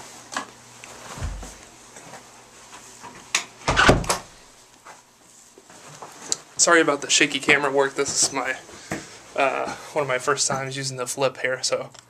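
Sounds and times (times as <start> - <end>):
door thumping: 3.7 - 4.3.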